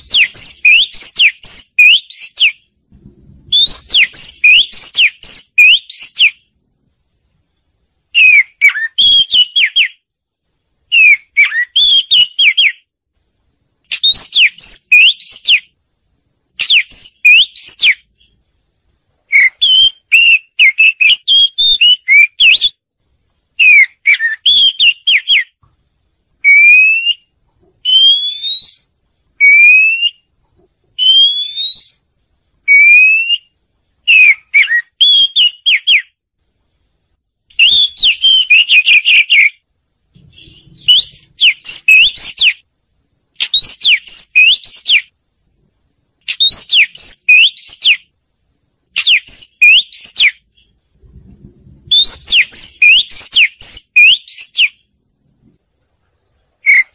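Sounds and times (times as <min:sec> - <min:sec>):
bird singing whistled phrases: 0:00.0 - 0:02.7, 0:03.4 - 0:06.5, 0:08.1 - 0:10.0, 0:10.9 - 0:12.8, 0:13.9 - 0:15.7, 0:16.6 - 0:18.4, 0:19.3 - 0:22.8, 0:23.6 - 0:25.6, 0:26.4 - 0:30.3, 0:31.0 - 0:32.0, 0:32.7 - 0:33.5, 0:34.1 - 0:36.2, 0:37.5 - 0:39.6, 0:40.2 - 0:42.6, 0:43.4 - 0:45.1, 0:46.3 - 0:48.1, 0:49.0 - 0:50.7, 0:51.9 - 0:54.8, 0:56.6 - 0:56.9.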